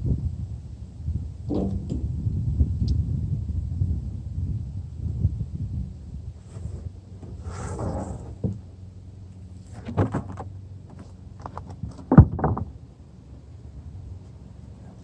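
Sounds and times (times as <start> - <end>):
sharp knocks and clatters: 1.5 - 2.2, 9.8 - 12.8.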